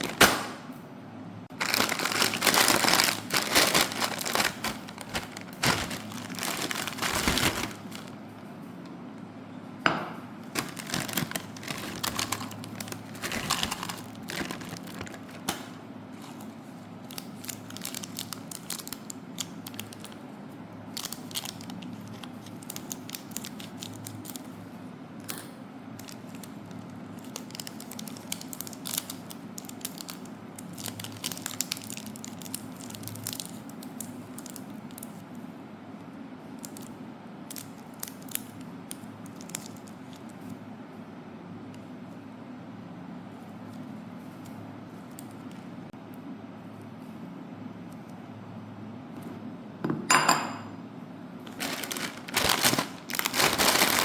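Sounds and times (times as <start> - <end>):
plastic packet crinkling and tearing: 0.0 - 0.6, 1.5 - 8.4, 10.5 - 20.2, 20.9 - 24.5, 26.0 - 35.2, 36.6 - 36.9, 37.5 - 40.4, 51.5 - 54.0.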